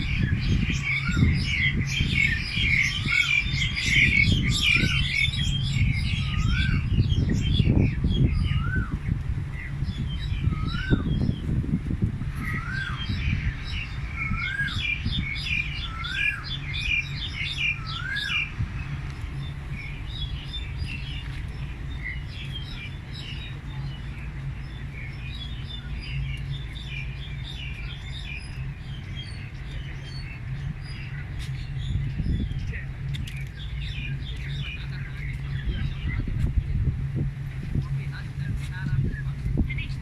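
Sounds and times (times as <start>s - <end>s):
bird whistling: 0.0s - 9.0s, 9.6s - 11.4s, 12.4s - 18.6s
birds chirping: 0.0s - 40.0s
low rumble: 0.0s - 40.0s.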